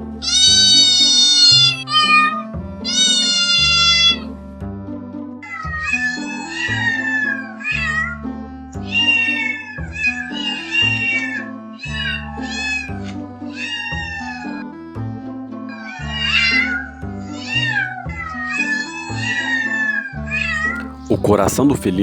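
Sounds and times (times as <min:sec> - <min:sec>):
background music with bass: 0:00.0 - 0:10.3, 0:14.2 - 0:17.4, 0:20.3 - 0:22.0
cats meowing: 0:00.2 - 0:04.3, 0:05.4 - 0:14.7, 0:15.7 - 0:21.4.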